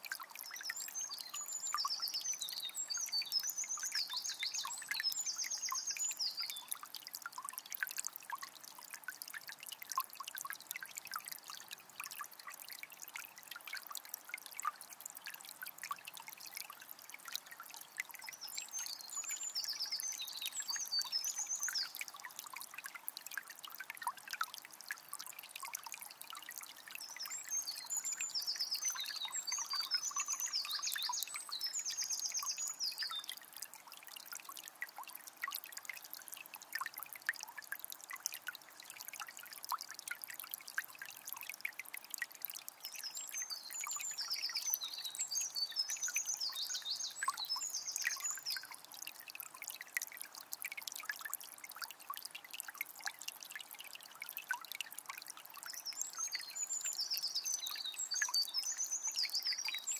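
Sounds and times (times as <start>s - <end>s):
river flowing and trickling: 0.0s - 59.9s
songbird singing: 0.4s - 6.8s, 18.2s - 22.2s, 27.0s - 33.4s, 42.9s - 48.7s, 55.7s - 59.9s.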